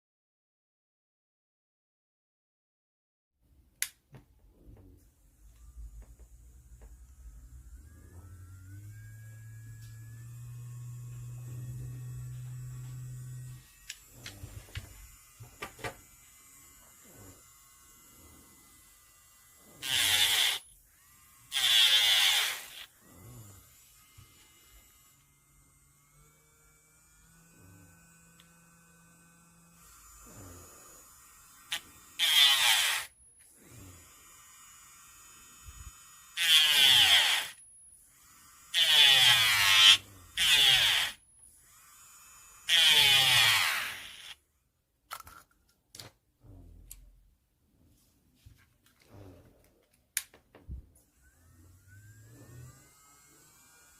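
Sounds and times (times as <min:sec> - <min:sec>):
nail drill filing nail: 0:05.0 - 0:44.5, 0:51.0 - 0:53.9
faint motor tone: 0:05.3 - 0:44.3, 0:51.0 - 0:53.9.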